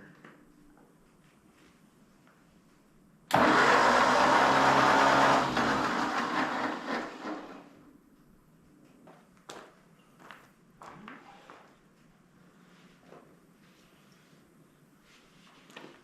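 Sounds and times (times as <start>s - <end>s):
small shop machine motor running: 3.3s - 7.7s.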